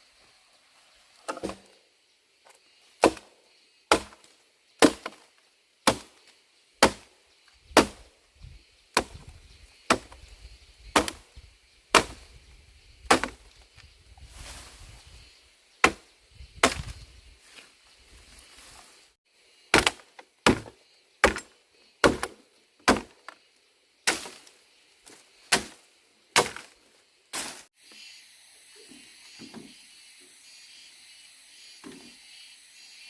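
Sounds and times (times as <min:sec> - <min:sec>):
wood being chopped: 0:01.2 - 0:01.8, 0:03.0 - 0:08.1, 0:09.0 - 0:10.2, 0:10.9 - 0:11.3, 0:11.9 - 0:12.3, 0:13.0 - 0:13.6, 0:15.8 - 0:17.0, 0:19.7 - 0:23.4, 0:24.1 - 0:24.5, 0:25.1 - 0:25.8, 0:26.4 - 0:26.8, 0:27.4 - 0:27.7.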